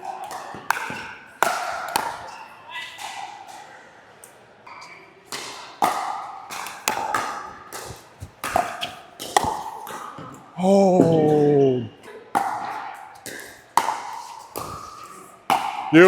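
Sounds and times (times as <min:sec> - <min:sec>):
player exclaiming ohh: 0:10.6 - 0:12.0.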